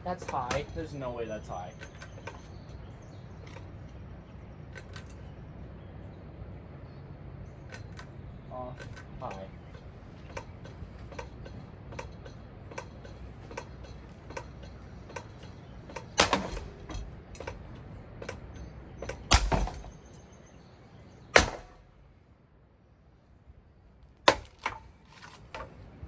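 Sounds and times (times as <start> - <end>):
parts banging: 0.0 - 5.4, 7.6 - 20.3, 21.3 - 22.1, 24.2 - 26.0
ceiling fan rumbling and knocking: 9.1 - 20.3
sharp crack: 14.3 - 20.0, 21.3 - 22.0, 24.2 - 25.7.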